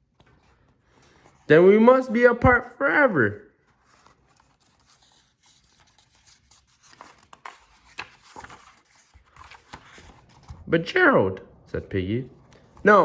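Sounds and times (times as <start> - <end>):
paper pages rustling: 0.0 - 1.7, 3.5 - 10.7, 12.4 - 13.0.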